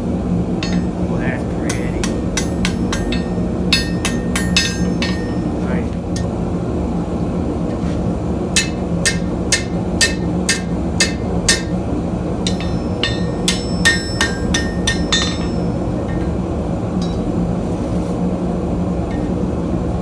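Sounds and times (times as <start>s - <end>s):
steady low hum: 0.0s - 20.0s
hammer striking steel on anvil: 0.6s - 6.3s, 8.6s - 17.6s, 19.1s - 19.5s.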